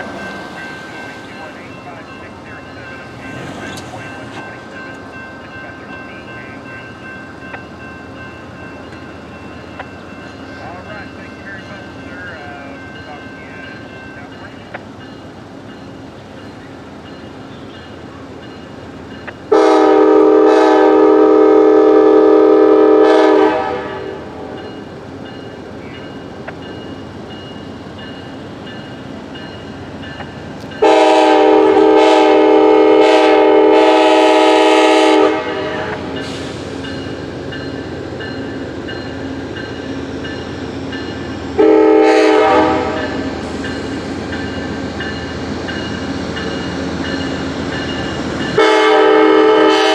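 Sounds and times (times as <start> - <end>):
train running: 0.0 - 49.9
locomotive air horn blasts: 19.5 - 24.2, 30.8 - 36.1, 41.6 - 43.2, 48.6 - 49.9.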